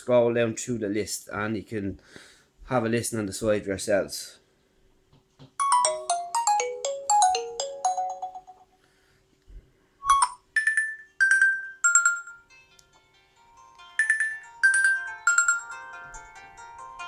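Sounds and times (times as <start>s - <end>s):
phone chime notes: 5.6s - 8.8s, 10.1s - 12.5s, 14.0s - 16.0s
phone ringtone melody: 5.6s - 8.8s, 10.1s - 12.5s, 13.8s - 17.0s.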